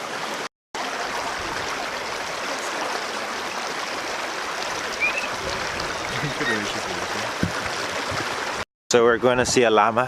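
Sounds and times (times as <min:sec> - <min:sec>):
stream rushing: 0:00.0 - 0:08.6.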